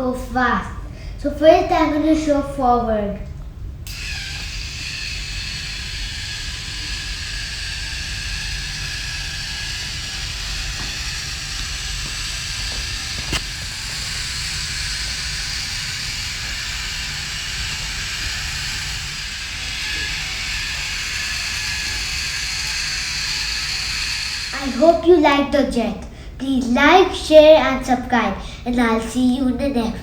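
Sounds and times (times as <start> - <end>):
toy motor running: 3.9 - 25.2.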